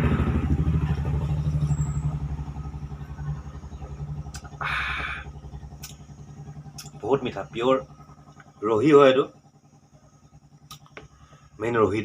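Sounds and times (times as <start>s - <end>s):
vehicle engine running: 0.0s - 12.0s
short hissing: 4.6s - 5.3s.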